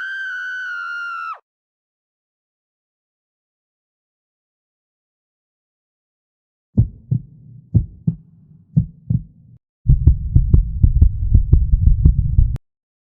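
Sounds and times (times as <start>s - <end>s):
heartbeat thumps: 6.8s - 12.6s
low hum: 9.9s - 12.6s.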